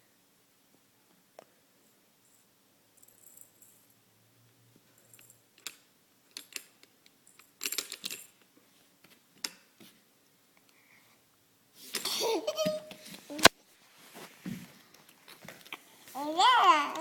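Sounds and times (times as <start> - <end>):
plastic toy clicking and rattling: 5.6 - 8.3.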